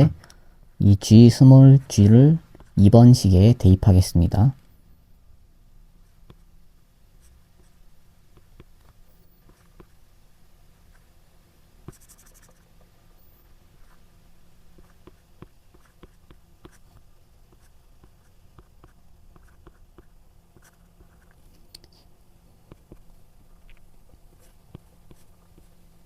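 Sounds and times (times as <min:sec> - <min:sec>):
faint low hum: 0:00.0 - 0:26.0
pen scratching on paper: 0:11.9 - 0:12.7, 0:14.8 - 0:21.4, 0:24.1 - 0:25.8.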